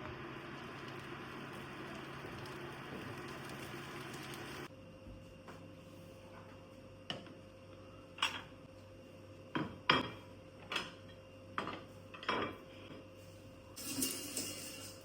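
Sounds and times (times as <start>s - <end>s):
dishes and utensils clinking: 13.8s - 15.0s.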